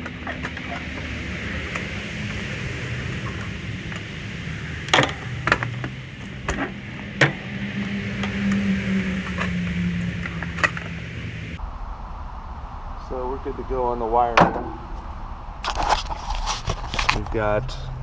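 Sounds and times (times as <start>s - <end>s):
low hum and hiss: 9.3s - 18.0s.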